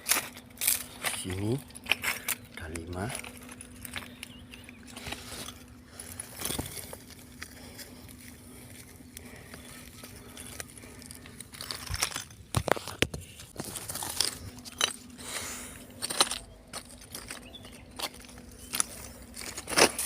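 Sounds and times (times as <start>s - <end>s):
footsteps crunching on leaves: 0.0s - 15.3s.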